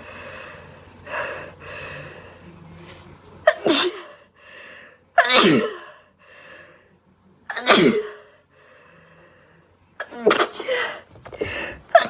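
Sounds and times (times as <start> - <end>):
woman sneezing: 3.5 - 4.1, 5.2 - 5.9, 7.5 - 8.2, 10.0 - 11.0.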